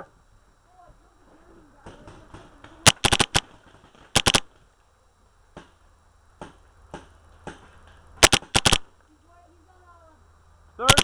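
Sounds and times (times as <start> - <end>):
paintball markers firing: 1.9 - 3.5, 4.1 - 4.5, 8.2 - 8.9.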